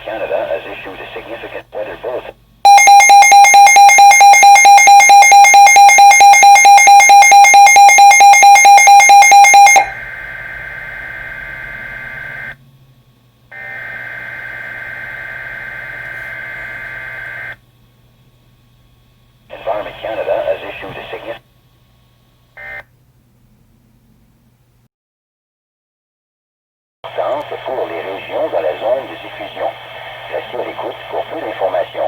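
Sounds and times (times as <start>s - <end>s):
buzzing two-pitch data tone: 2.7s - 9.9s
weather radio alarm beeping: 2.7s - 10.0s.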